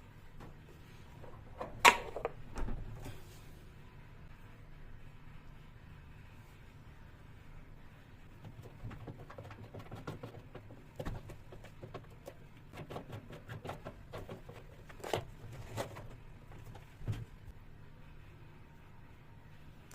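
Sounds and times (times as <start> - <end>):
steady low hum: 0.0 - 19.9
parts clicking and knocking: 8.4 - 17.4.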